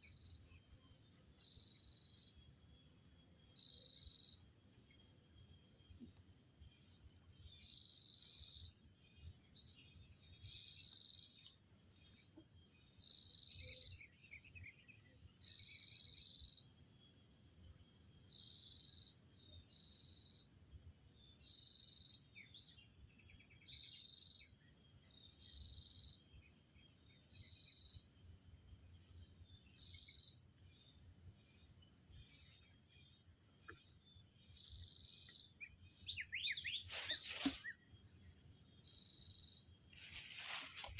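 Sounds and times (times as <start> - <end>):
high insect drone: 21.2 - 40.9.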